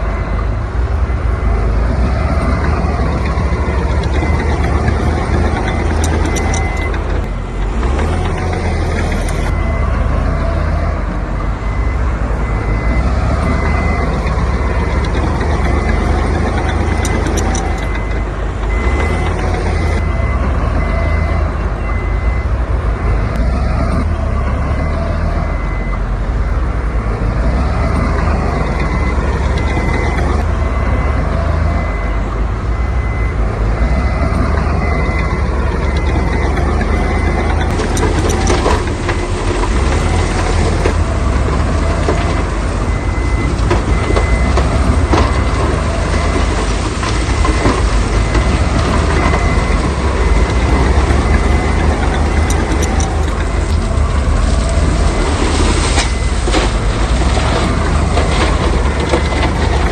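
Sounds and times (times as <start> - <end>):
diesel machinery running: 0.0 - 59.9
reversing beeper: 0.0 - 59.9
rattling scraping clatter: 36.0 - 59.9.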